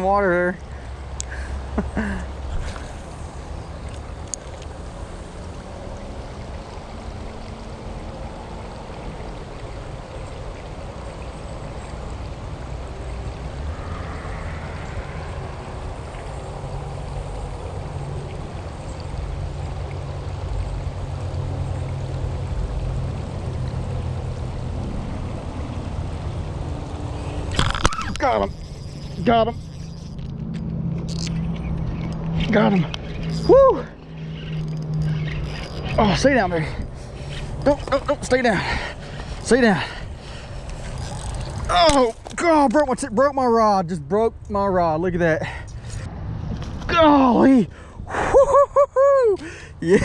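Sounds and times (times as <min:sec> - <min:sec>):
creek water running: 0:00.0 - 0:50.0
low rumble: 0:12.7 - 0:18.0.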